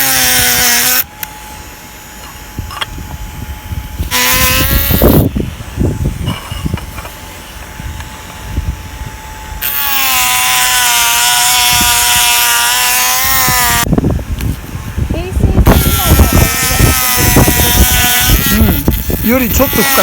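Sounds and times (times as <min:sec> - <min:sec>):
rotary tool grinding wood: 0:00.0 - 0:01.1, 0:04.0 - 0:05.3, 0:09.6 - 0:13.9, 0:15.6 - 0:20.0.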